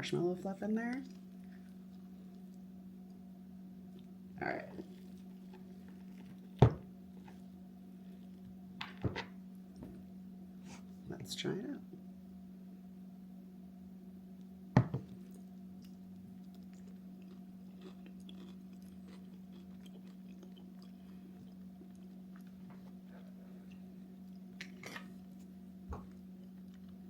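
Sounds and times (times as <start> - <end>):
low hum: 0.0 - 27.0
person chewing: 4.7 - 6.6, 15.1 - 27.0
small crunches: 15.1 - 27.0.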